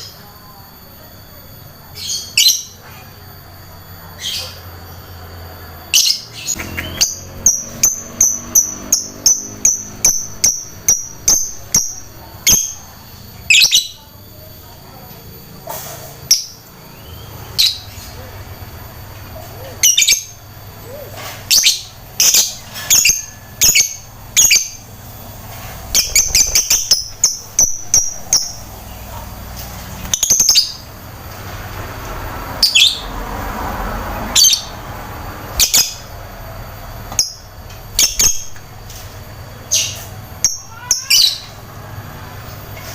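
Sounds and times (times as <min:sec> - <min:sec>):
lovebird chirping: 0:04.0 - 0:14.1, 0:16.2 - 0:18.4, 0:19.1 - 0:29.4, 0:30.0 - 0:31.0, 0:37.1 - 0:38.6.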